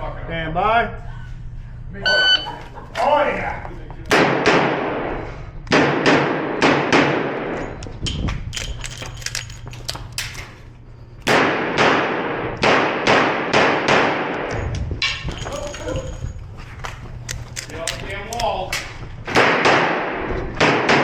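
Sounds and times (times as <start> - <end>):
echoing revolver shots: 4.1 - 5.1, 5.7 - 7.5, 11.2 - 14.5, 19.3 - 21.0.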